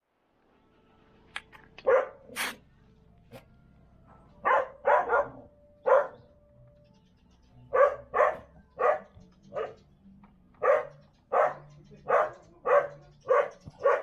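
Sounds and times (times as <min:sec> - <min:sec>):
dog barking: 0:01.8 - 0:02.6, 0:04.4 - 0:06.3, 0:07.7 - 0:09.8, 0:10.6 - 0:14.0.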